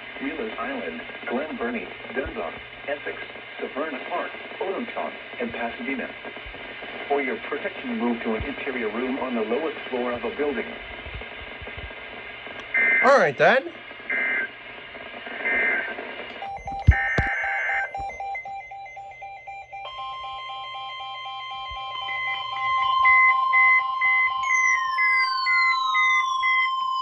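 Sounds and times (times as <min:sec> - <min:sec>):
alert data bursts: 0:15.6 - 0:27.0
pulsing beep: 0:16.3 - 0:27.0
steady alarm tone: 0:16.3 - 0:27.0.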